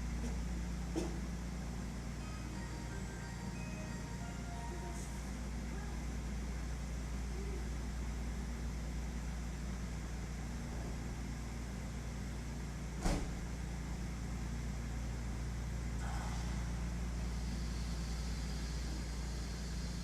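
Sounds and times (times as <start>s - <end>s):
electric train humming: 0.0s - 12.9s, 13.6s - 20.0s
faint high whine: 1.5s - 8.5s, 15.4s - 20.0s.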